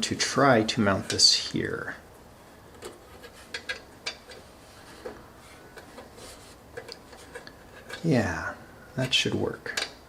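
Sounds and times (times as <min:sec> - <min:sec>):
computer hardware clicks and scrapes: 0:02.7 - 0:08.2.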